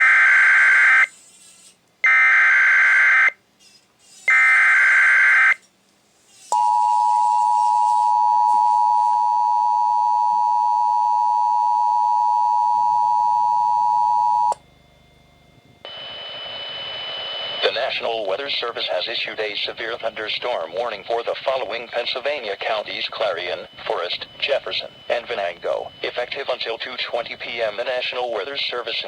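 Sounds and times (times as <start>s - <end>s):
two-tone attention signal: 6.6s - 14.6s, 22.4s - 27.6s
buzzy data bursts: 15.9s - 29.0s.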